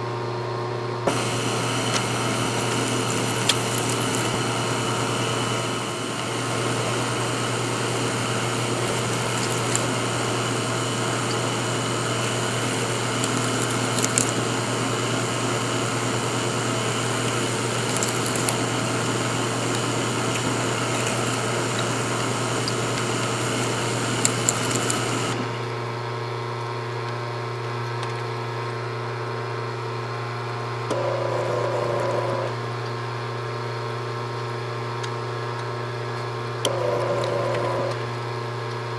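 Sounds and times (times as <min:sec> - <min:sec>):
machine humming: 0:01.0 - 0:26.0, 0:30.9 - 0:32.7, 0:36.6 - 0:38.2.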